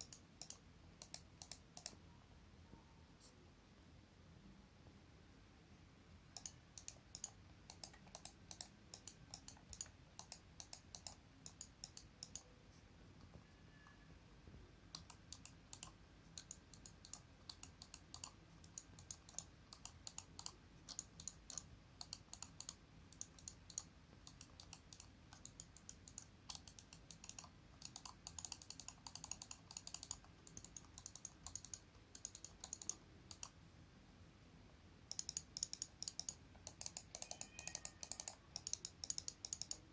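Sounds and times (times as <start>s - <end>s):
mouse buttons clicking: 0.0s - 2.0s, 6.4s - 12.5s, 14.9s - 33.6s, 35.1s - 39.9s.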